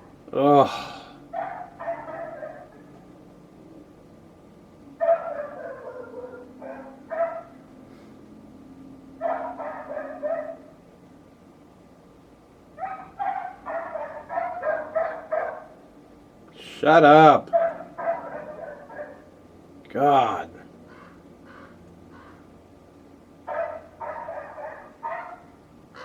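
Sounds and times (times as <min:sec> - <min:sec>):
dog barking and yelping: 0:01.3 - 0:03.1, 0:05.0 - 0:07.8, 0:09.2 - 0:10.8, 0:12.7 - 0:15.9, 0:17.4 - 0:19.5, 0:23.4 - 0:26.0.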